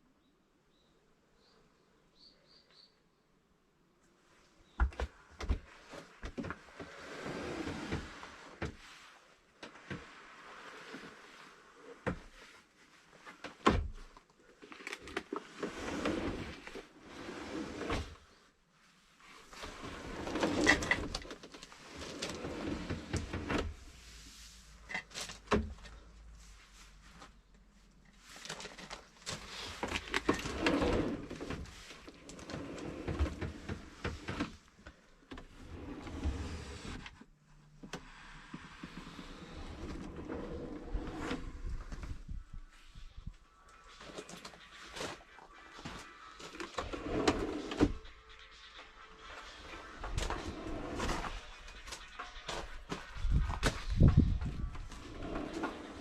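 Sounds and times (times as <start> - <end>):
box sliding on rails: 6.7 - 8.8, 15.4 - 18.2, 19.5 - 24.0, 29.4 - 34.6, 35.4 - 37.2, 38.1 - 42.2, 44.1 - 48.1, 48.8 - 52.6, 53.2 - 56.0.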